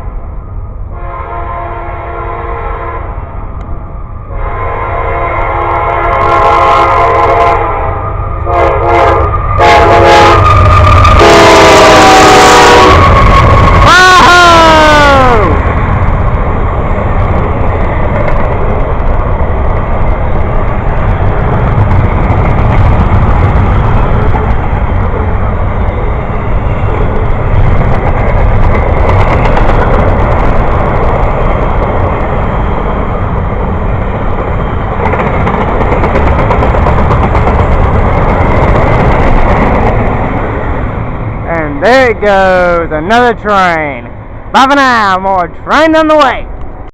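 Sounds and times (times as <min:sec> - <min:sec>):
train rumbling and clattering by: 0:00.0 - 0:46.9
train horn: 0:00.9 - 0:03.3, 0:04.3 - 0:14.6.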